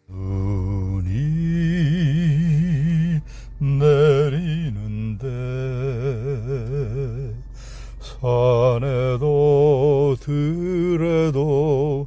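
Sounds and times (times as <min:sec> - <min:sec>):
man singing unaccompanied: 0:00.0 - 0:12.0.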